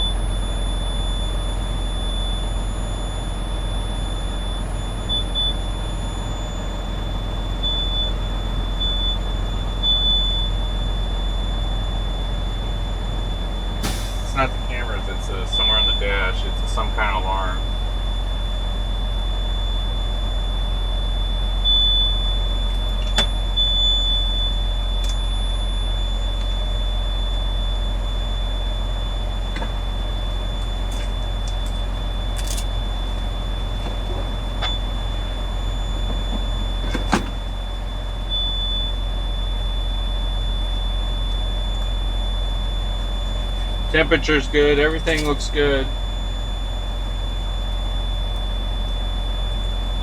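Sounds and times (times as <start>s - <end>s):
low engine rumble: 0.0s - 50.0s
high-pitched warning buzzer: 15.5s - 17.6s, 21.6s - 27.9s.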